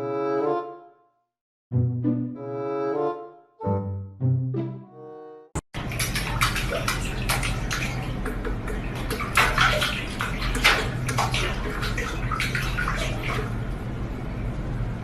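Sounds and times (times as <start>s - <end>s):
water running and splashing: 5.8s - 13.8s
steady low hum: 5.8s - 15.0s.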